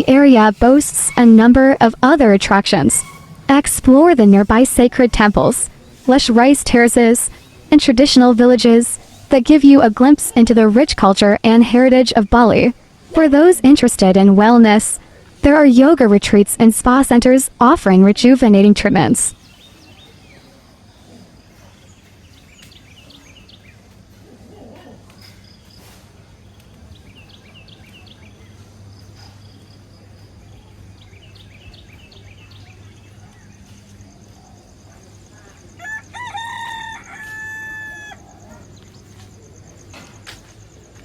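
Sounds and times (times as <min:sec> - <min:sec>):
low hum and hiss: 0:00.0 - 0:41.0
rooster crowing: 0:35.7 - 0:38.5.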